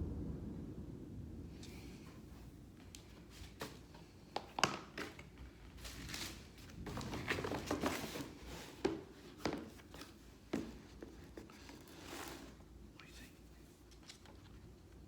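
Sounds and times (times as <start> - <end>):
paper rustling and crinkling: 3.0 - 15.0.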